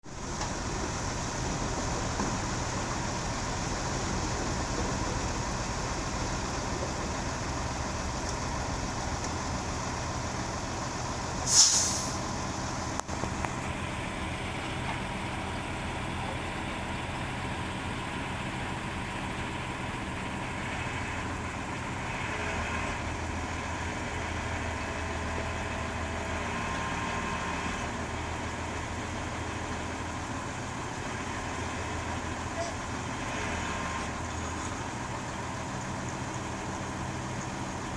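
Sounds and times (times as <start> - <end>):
diesel engine running: 0.0 - 37.9
air release hiss: 11.4 - 12.3.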